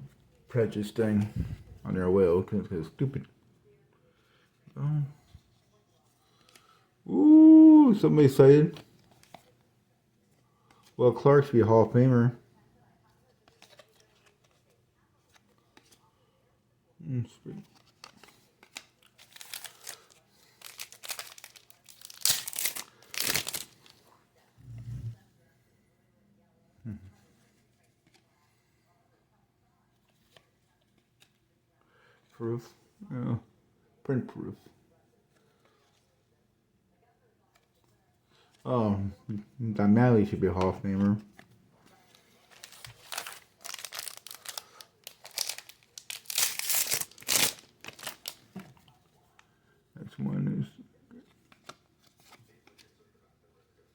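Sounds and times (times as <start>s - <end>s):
wrapper crinkling and tearing: 17.8s - 24.0s, 42.0s - 48.9s.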